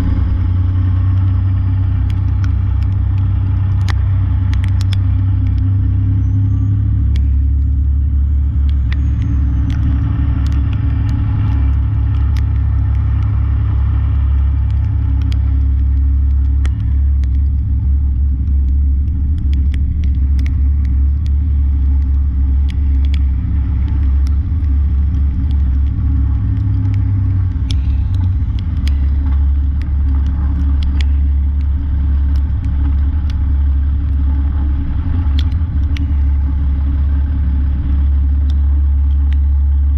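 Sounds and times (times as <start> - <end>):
diesel truck engine rumble: 0.0 - 39.9
small clicks and ticks: 0.0 - 39.9.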